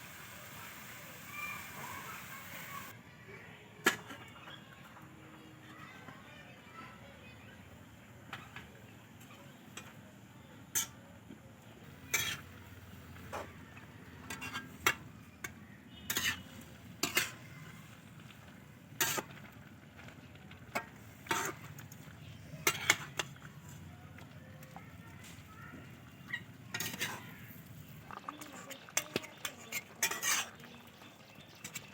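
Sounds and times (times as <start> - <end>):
faint steady hiss: 0.0 - 2.9
utensil scraping a pan: 12.0 - 13.6, 14.2 - 15.0, 16.0 - 18.0, 18.9 - 19.4, 20.7 - 21.8, 26.2 - 30.7.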